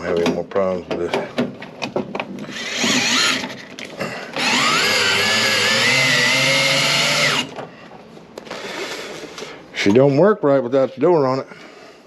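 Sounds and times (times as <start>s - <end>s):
power drill whining: 2.5s - 3.7s, 4.3s - 7.6s.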